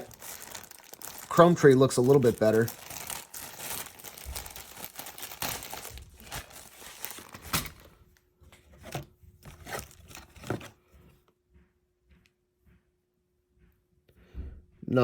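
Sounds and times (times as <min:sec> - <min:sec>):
plastic bags crinkling: 0:00.0 - 0:08.0.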